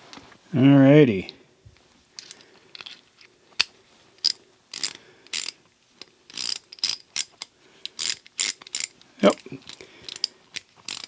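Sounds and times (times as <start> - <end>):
ratchet clicking: 4.2 - 5.6, 6.3 - 11.0.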